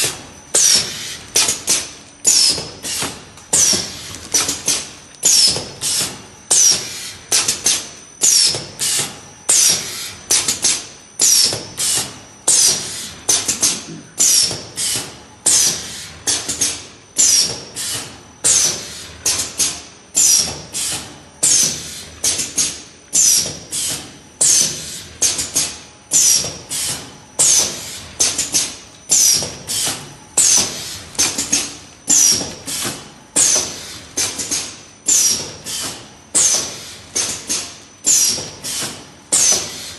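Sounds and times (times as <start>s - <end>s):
filling machine mechanical strokes: 26.1s - 39.9s
machine hiss: 26.1s - 39.9s.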